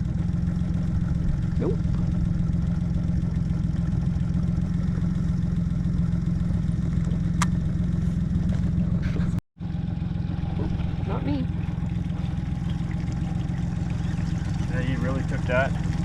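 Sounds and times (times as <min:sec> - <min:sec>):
boat motor idling: 0:00.0 - 0:16.0.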